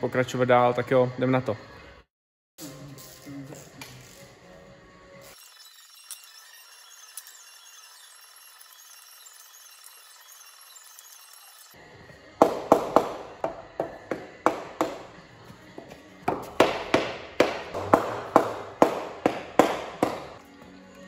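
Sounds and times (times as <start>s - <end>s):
faint background music: 0.0s - 5.4s, 11.8s - 21.0s.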